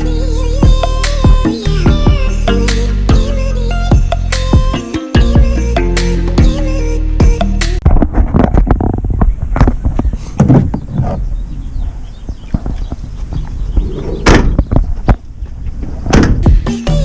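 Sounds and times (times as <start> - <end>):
irregular knocks and thuds: 7.8 - 11.2, 12.2 - 16.6
low rumbling: 8.0 - 16.6.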